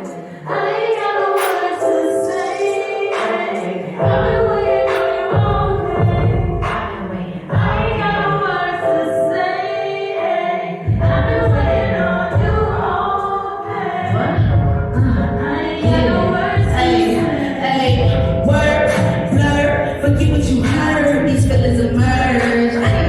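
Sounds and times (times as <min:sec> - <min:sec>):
layered sung vocals: 0:00.0 - 0:20.0
bass-heavy beat: 0:04.0 - 0:08.0.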